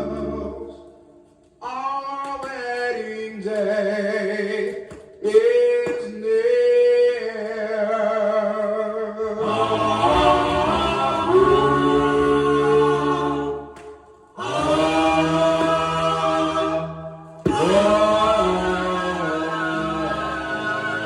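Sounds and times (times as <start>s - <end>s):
vocal group singing harmony: 8.1s - 21.0s.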